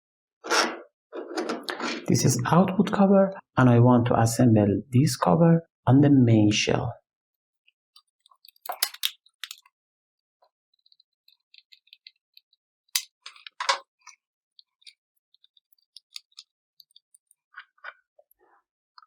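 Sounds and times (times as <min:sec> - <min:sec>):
plastic parts clicking: 0:08.0 - 0:09.7, 0:12.9 - 0:15.0.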